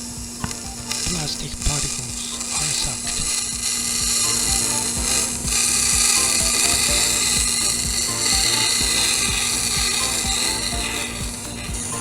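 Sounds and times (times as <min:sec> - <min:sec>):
air hissing into vacuum: 0:00.0 - 0:12.0
low hum: 0:00.0 - 0:12.0.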